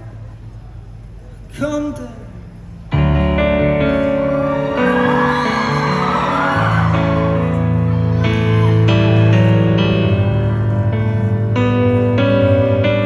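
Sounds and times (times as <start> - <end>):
audience cheering and whooping: 4.2 - 9.1.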